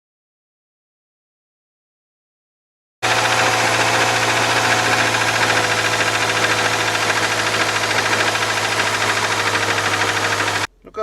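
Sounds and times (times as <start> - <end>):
car engine running with knock: 3.0 - 10.7.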